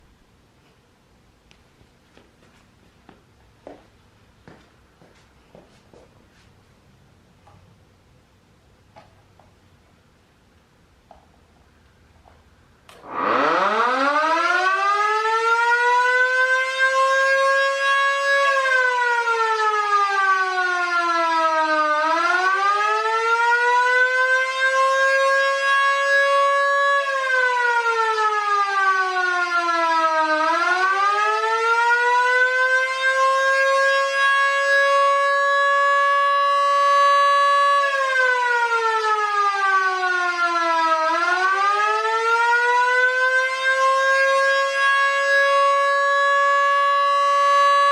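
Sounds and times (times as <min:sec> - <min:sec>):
sirens wailing: 0:12.9 - 0:47.9.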